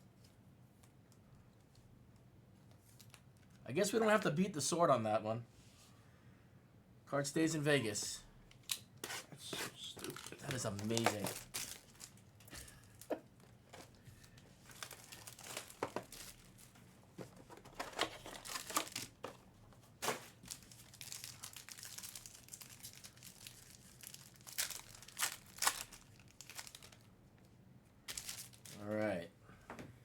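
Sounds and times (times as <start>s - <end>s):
card pack wrappers crinkling: 9.6s - 16.8s, 17.6s - 19.4s, 20.0s - 27.1s, 28.1s - 28.9s.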